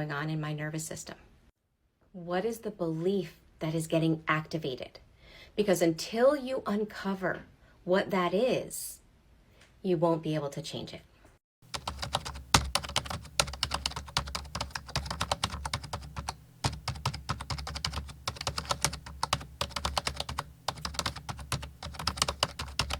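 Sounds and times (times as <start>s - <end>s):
low steady hum: 11.6s - 22.9s
typing on a keyboard: 11.7s - 22.9s.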